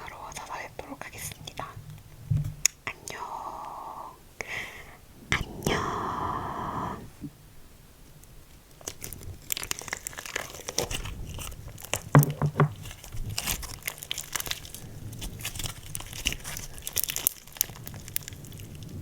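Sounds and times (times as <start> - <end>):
slime crackling and clicking: 8.7 - 19.0.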